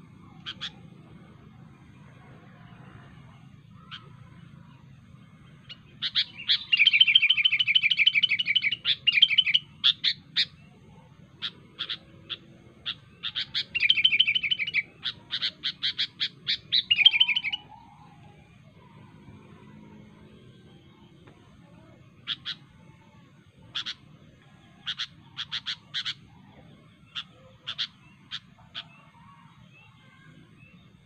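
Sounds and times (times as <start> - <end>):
bulbul chirping: 11.4 - 17.8, 22.2 - 22.7.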